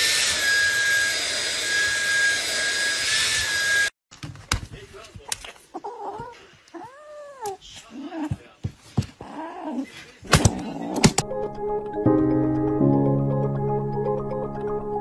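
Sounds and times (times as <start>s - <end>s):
cat meowing: 5.7s - 8.3s.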